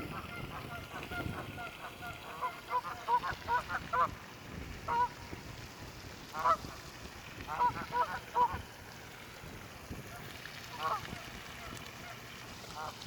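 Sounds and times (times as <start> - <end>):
geese honking: 0.0 - 4.2, 4.8 - 5.2, 6.3 - 6.8, 7.5 - 8.6, 10.1 - 13.0.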